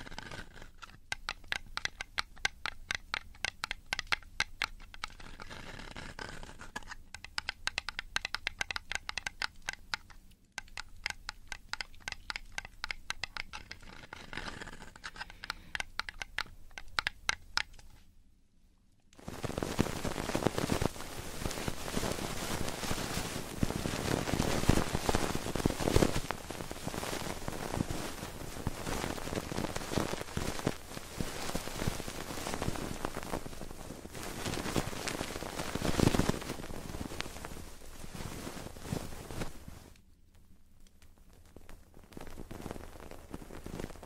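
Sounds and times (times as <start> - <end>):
fingers rubbing microphone: 0.0 - 18.0, 19.2 - 40.0.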